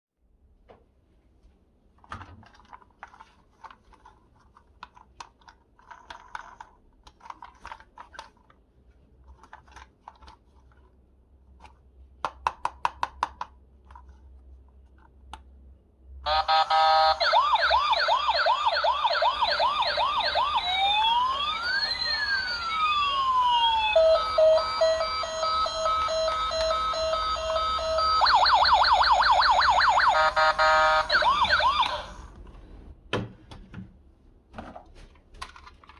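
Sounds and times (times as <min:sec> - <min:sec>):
faint clicks and handling: 0:02.0 - 0:15.6
toy siren cycling patterns: 0:16.3 - 0:32.3.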